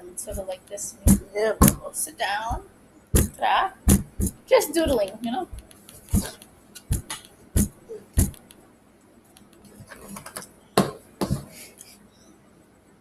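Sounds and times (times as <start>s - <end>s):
sharp taps and knocks: 0.3s - 1.9s, 3.2s - 8.6s, 10.2s - 11.6s.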